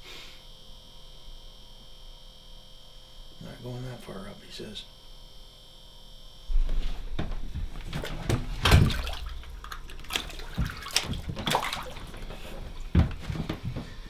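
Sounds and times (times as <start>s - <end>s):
water sloshing and splashing: 6.6s - 14.0s
irregular knocks: 7.1s - 14.0s.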